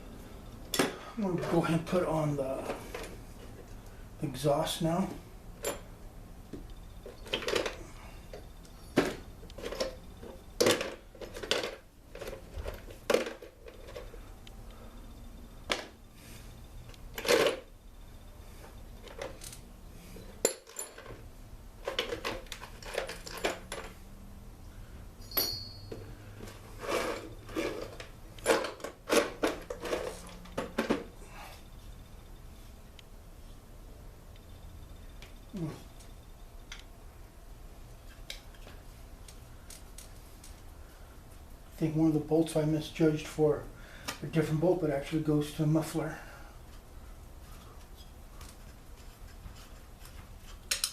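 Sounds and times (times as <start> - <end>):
small metal parts clinking: 7.0 - 14.3, 17.2 - 17.7, 19.0 - 19.7, 20.4 - 21.2, 21.8 - 24.0, 25.2 - 31.0.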